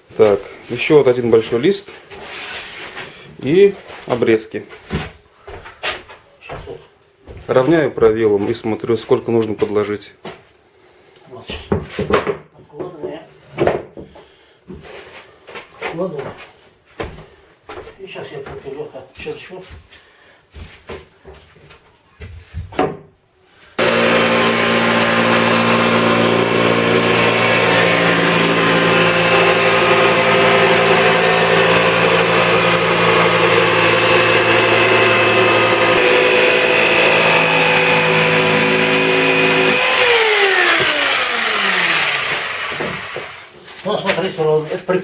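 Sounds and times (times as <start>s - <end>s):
power saw cutting plywood: 23.8s - 43.6s.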